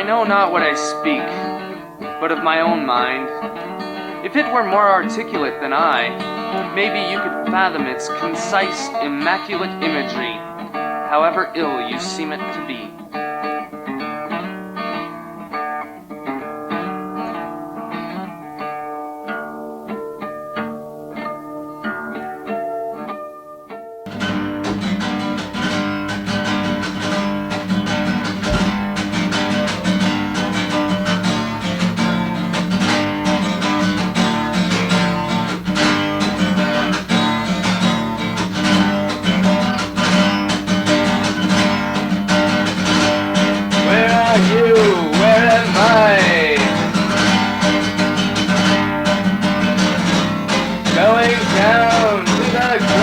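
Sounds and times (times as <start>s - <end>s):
acoustic guitar strumming: 0.0s - 53.0s
sliding melody line: 43.7s - 47.3s, 50.9s - 53.0s.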